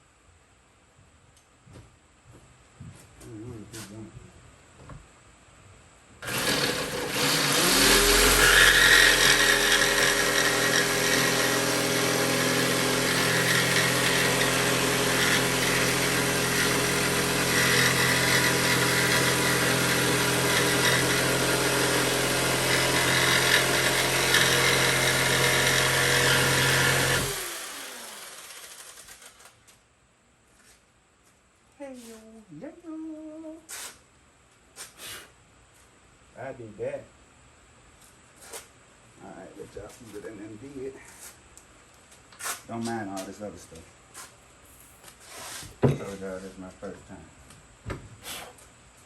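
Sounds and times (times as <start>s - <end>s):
circular saw cutting a board: 6.2s - 29.4s.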